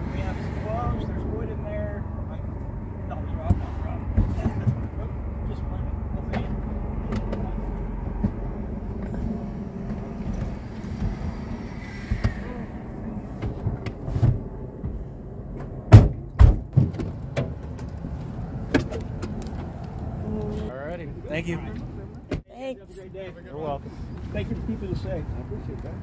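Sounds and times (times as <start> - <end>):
vehicle idling rumble: 0.0 - 15.9.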